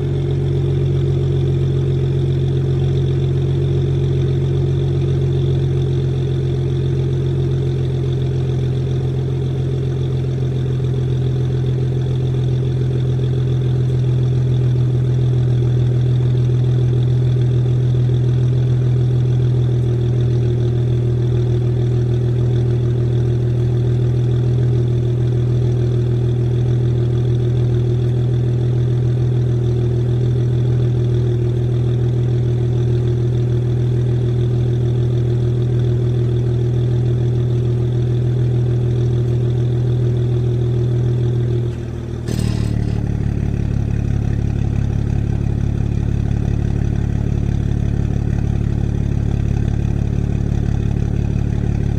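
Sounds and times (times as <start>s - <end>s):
car engine idling: 0.0s - 51.9s.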